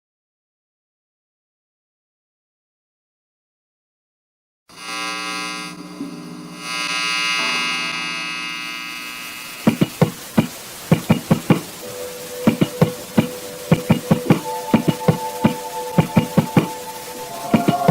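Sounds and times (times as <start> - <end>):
electronic buzzing drone: 4.7 - 10.0.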